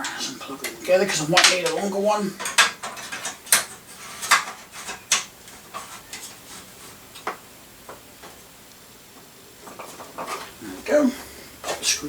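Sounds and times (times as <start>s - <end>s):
computer parts clicking and clacking: 0.4s - 5.9s.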